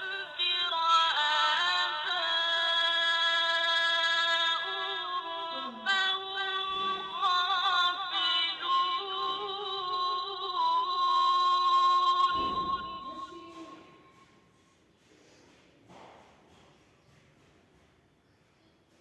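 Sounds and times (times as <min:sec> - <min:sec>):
high singing voice: 0:00.0 - 0:14.4.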